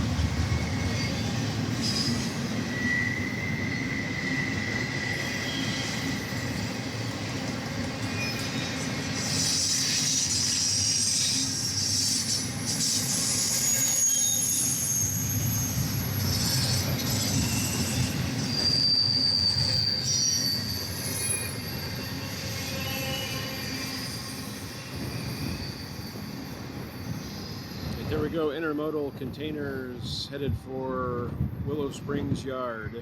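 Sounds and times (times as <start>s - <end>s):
freight train rumbling on rails: 0.0s - 33.0s
high-pitched wheel squeal: 0.5s - 7.0s, 8.0s - 28.0s.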